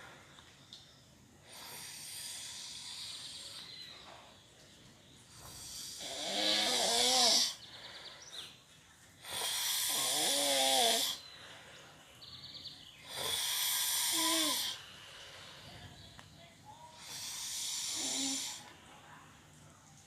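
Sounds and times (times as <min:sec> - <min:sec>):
person snoring: 0:01.5 - 0:03.6, 0:05.4 - 0:07.6, 0:09.2 - 0:11.2, 0:13.1 - 0:14.8, 0:17.0 - 0:18.7.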